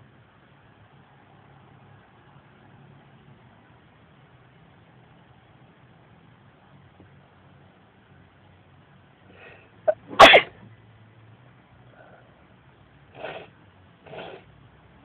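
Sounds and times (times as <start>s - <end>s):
man sneezing: 9.9s - 10.5s.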